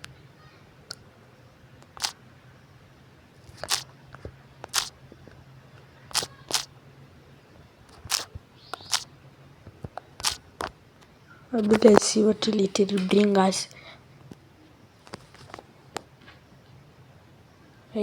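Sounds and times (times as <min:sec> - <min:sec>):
faint low hum: 0:00.0 - 0:18.0
computer keys clicking: 0:04.6 - 0:04.9, 0:06.1 - 0:06.7, 0:08.0 - 0:09.1.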